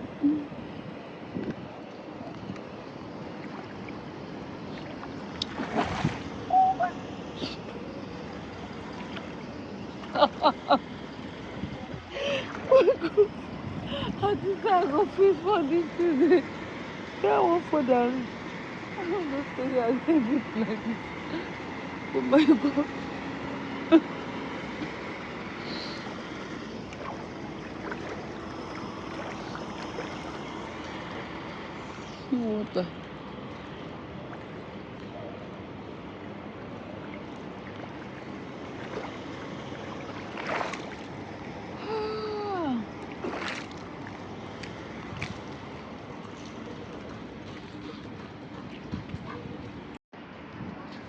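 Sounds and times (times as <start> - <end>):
traffic hissing through floodwater: 0.0 - 48.5
water swishing: 3.2 - 7.9, 26.3 - 32.0, 35.5 - 41.9, 42.5 - 49.4.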